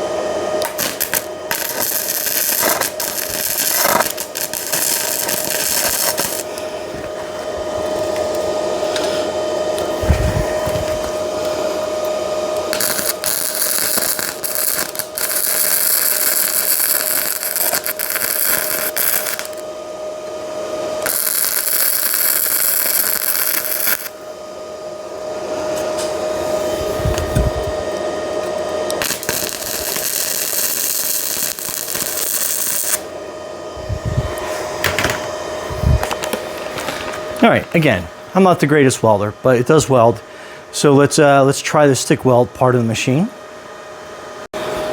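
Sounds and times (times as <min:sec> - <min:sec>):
high whine: 0:00.0 - 0:44.9
welding arc crackling: 0:00.6 - 0:06.6, 0:12.6 - 0:19.6, 0:21.0 - 0:24.2, 0:26.8 - 0:33.1.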